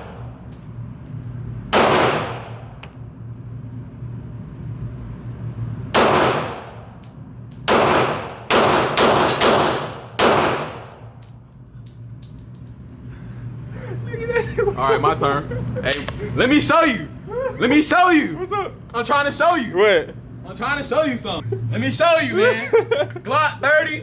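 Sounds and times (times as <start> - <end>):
rifle shots with echoes: 1.7 - 2.8, 6.0 - 6.9, 7.7 - 11.0.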